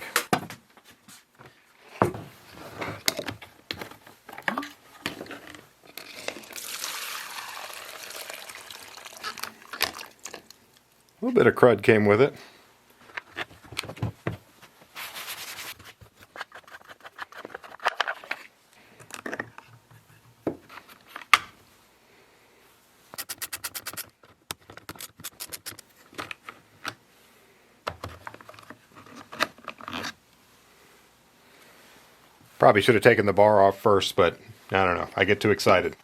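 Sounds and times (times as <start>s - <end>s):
tools and parts clicking and knocking: 23.2s - 27.0s.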